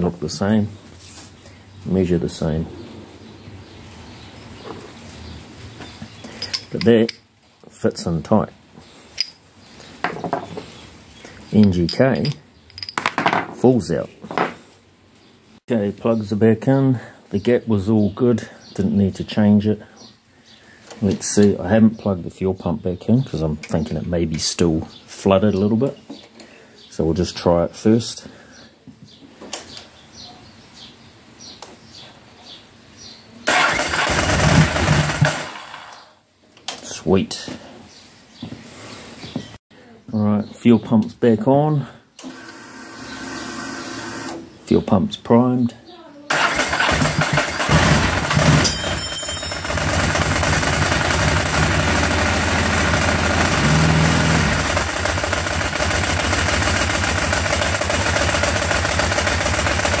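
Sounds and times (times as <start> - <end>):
motorcycle engine cranking and starting: 33.5 - 36.1, 46.3 - 60.0.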